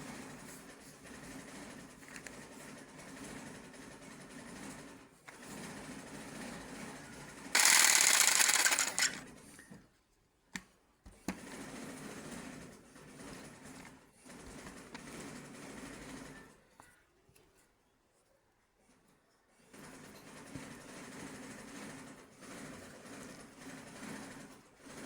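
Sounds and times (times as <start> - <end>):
power tool cutting: 7.6 - 9.2
sharp clicks: 7.6 - 9.2
small power tool rattling: 7.6 - 9.2.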